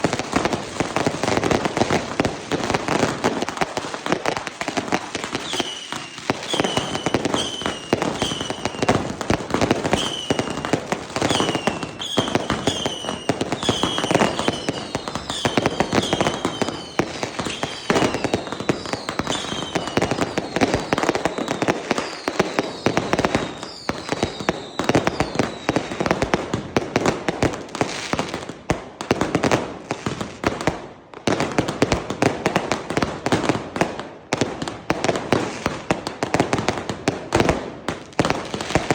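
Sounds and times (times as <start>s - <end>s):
fireworks bangs and crackling: 0.0s - 38.9s
firework whistles falling: 5.4s - 26.0s.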